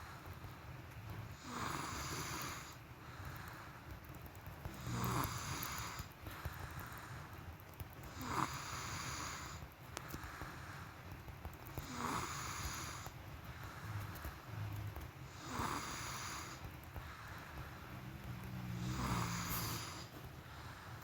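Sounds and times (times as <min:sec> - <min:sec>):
quiet breathing: 0:00.0 - 0:21.0
person snoring: 0:01.4 - 0:02.8, 0:04.8 - 0:06.1, 0:08.1 - 0:09.6, 0:11.8 - 0:13.1, 0:15.3 - 0:17.4, 0:18.0 - 0:21.0.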